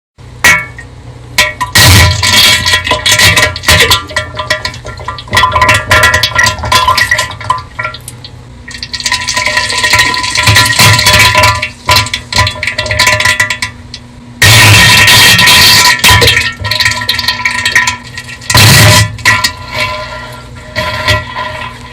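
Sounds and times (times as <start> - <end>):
distorted fart sound effect: 14.4 - 16.2, 18.5 - 19.2.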